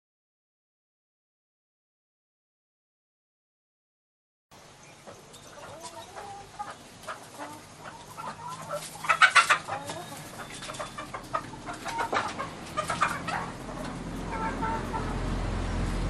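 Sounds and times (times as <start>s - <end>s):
chickens clucking and calling: 4.6s - 16.0s.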